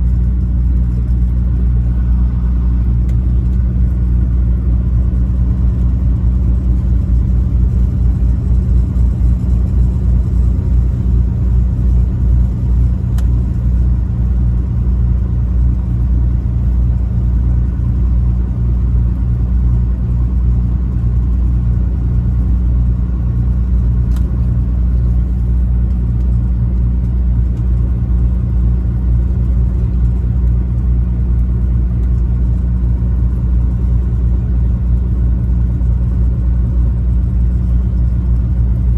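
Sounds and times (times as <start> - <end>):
truck engine and road noise: 0.0 - 38.9.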